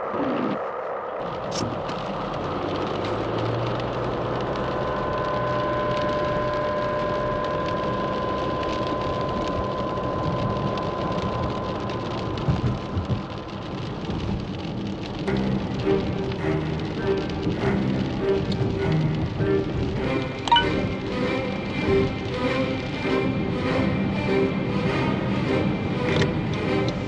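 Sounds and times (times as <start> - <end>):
traffic on wet road: 0.0 - 27.0
thin steady whine: 4.0 - 14.0.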